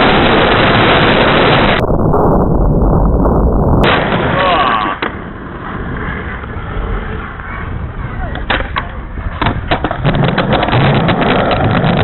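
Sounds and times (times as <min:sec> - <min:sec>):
skateboard wheels rolling on pavement: 0:00.0 - 0:03.1, 0:03.8 - 0:12.0
skateboard clacks: 0:04.9 - 0:12.0.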